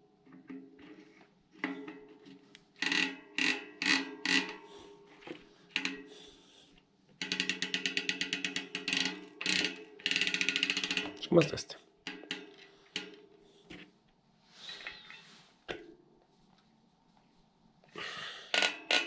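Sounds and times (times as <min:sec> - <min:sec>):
bicycle freehub clicking: 0:02.8 - 0:04.9, 0:05.8 - 0:06.4, 0:07.2 - 0:11.3.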